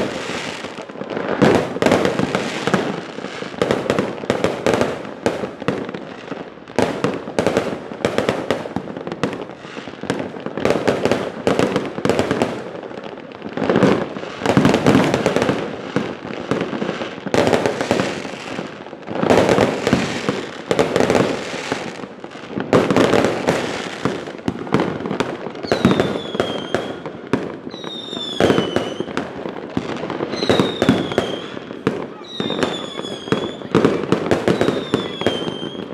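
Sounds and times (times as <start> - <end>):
fireworks bangs and crackles: 0.0 - 35.9
firework whistles falling in pitch: 25.6 - 27.1, 27.7 - 29.2, 30.3 - 35.9.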